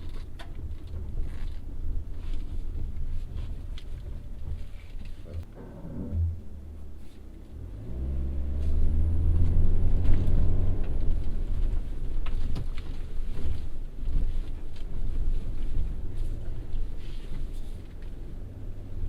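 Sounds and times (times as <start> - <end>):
car engine accelerating: 5.3 - 19.0.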